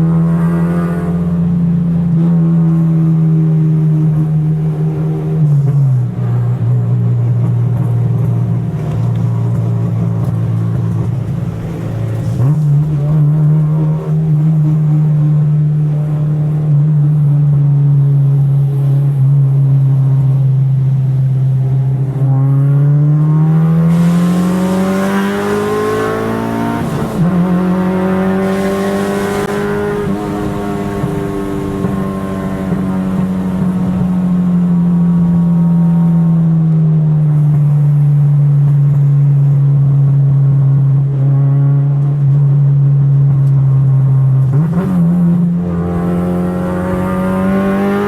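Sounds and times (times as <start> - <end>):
car engine accelerating: 0.0 - 48.0.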